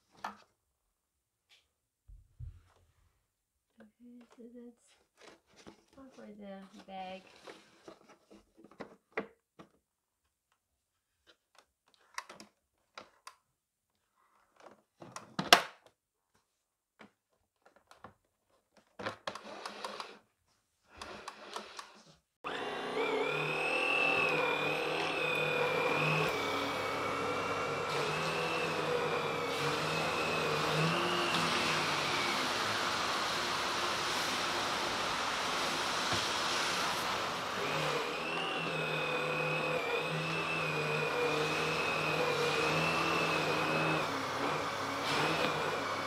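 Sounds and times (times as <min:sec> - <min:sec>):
vacuum cleaner motor whining: 0:19.3 - 0:20.2, 0:21.0 - 0:46.0.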